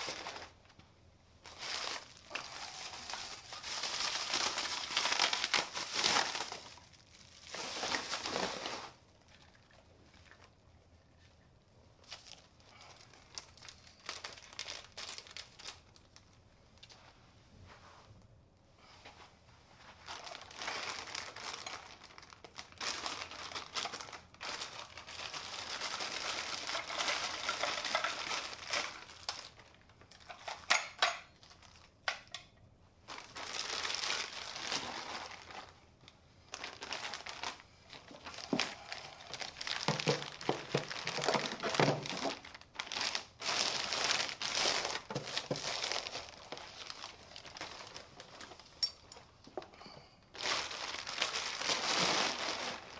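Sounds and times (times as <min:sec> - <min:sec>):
packaging crinkling and rustling: 0:00.0 - 0:11.4, 0:12.0 - 0:17.1, 0:19.8 - 0:32.4, 0:33.0 - 0:52.9.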